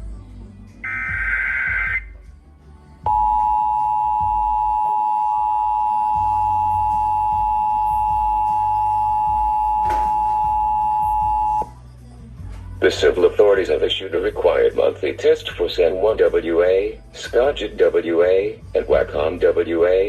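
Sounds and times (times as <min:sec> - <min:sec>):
digital data burst: 0:00.8 - 0:02.1
two-tone emergency alert signal: 0:00.8 - 0:02.2, 0:03.1 - 0:11.7.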